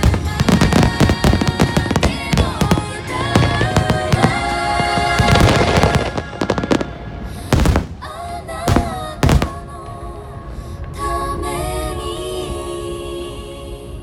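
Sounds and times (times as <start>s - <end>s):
fireworks booms: 0.0s - 9.9s
fireworks crackling and popping: 0.0s - 10.0s
music playing: 0.0s - 14.0s.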